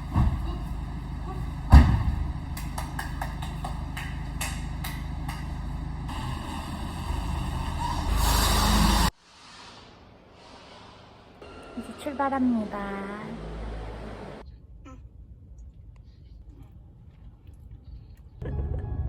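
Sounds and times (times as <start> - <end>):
heavy thump: 0.0 - 0.8, 1.7 - 2.6
car engine rumbling: 0.0 - 9.2, 11.4 - 14.4.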